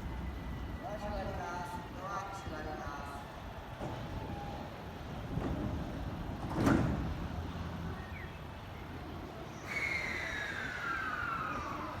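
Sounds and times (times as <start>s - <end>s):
train low rumble: 0.0s - 12.0s.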